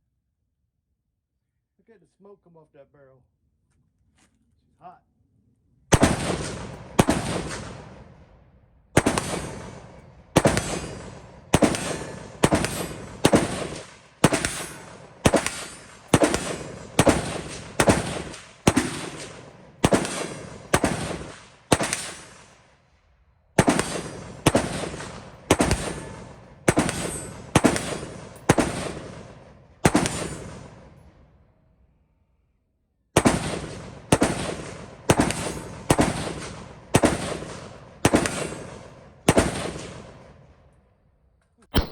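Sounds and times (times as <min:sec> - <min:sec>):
rapid pistol gunshots with echo: 0:05.9 - 0:08.4, 0:09.0 - 0:22.6, 0:23.6 - 0:31.0, 0:33.2 - 0:40.4.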